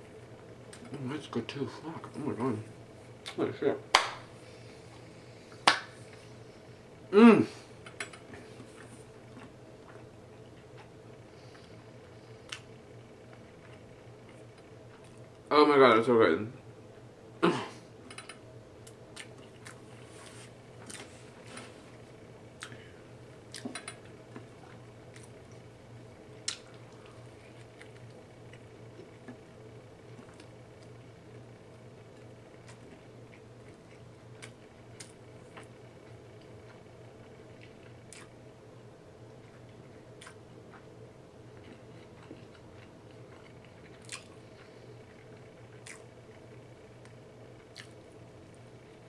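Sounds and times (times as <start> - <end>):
steady low hum: 0.0 - 49.0
lip-smacks and clicks: 26.4 - 26.9, 37.6 - 38.4, 40.2 - 40.4
wet chewing: 37.6 - 38.4, 39.5 - 40.9, 41.5 - 46.1, 47.0 - 48.0.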